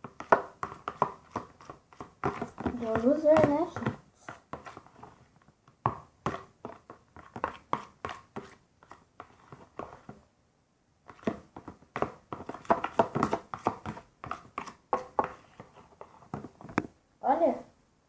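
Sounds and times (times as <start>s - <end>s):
spoon stirring in a pot: 0.0s - 5.2s, 11.1s - 16.8s.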